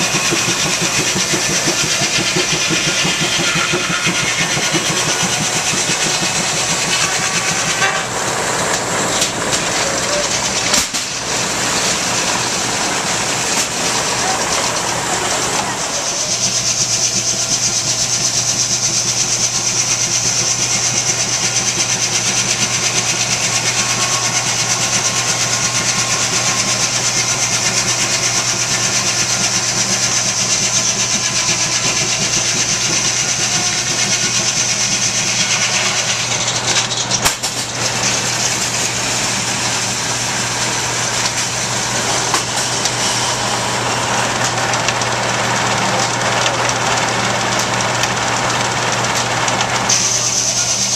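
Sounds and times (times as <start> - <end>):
sawmill machinery din: 0.0 - 50.9
sharp mechanical knocks: 10.4 - 11.2, 31.6 - 38.7.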